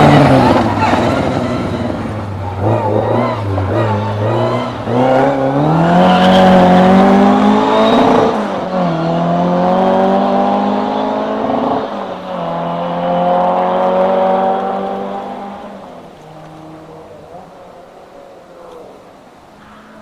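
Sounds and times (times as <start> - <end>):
rally car engine accelerating: 0.0 - 17.6.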